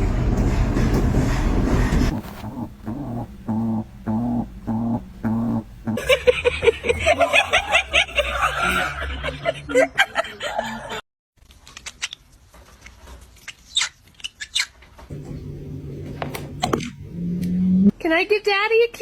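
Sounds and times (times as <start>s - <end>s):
rapid loud laughter: 5.9s - 11.0s.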